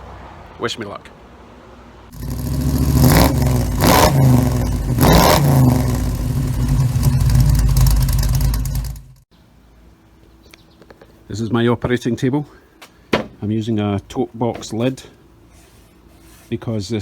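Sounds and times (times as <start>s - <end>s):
engine revving in sharp blips: 2.1s - 9.2s.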